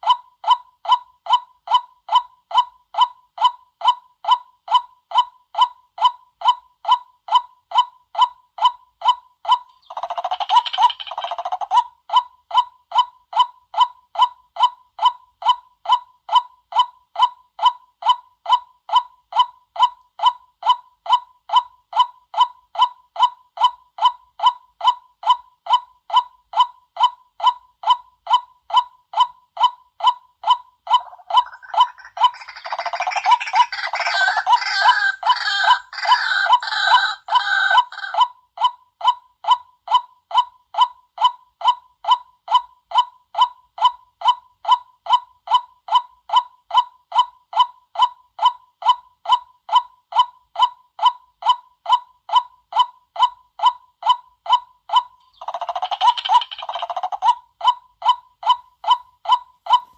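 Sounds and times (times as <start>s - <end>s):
waterhen calling: 30.9s - 38.2s
harsh noisy bird outburst: 31.4s - 38.1s.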